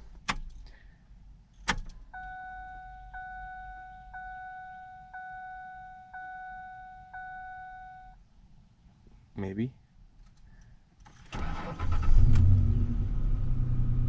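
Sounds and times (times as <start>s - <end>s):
dashboard warning chime: 2.1s - 8.2s.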